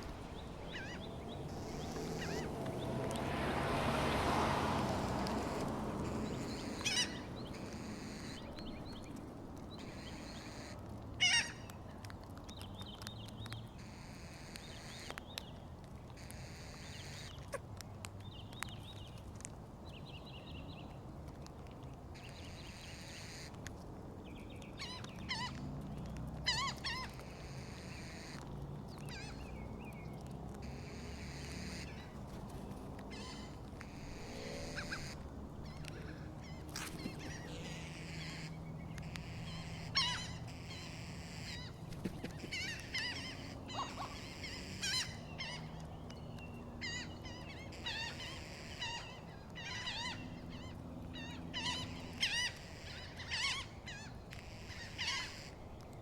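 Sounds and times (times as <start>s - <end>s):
gulls and crows calling: 0.0s - 12.2s, 24.6s - 55.9s.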